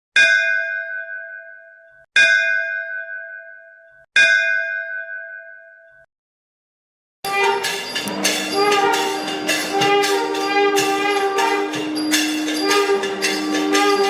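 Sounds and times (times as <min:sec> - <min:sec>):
bell struck: 0:07.3 - 0:14.0.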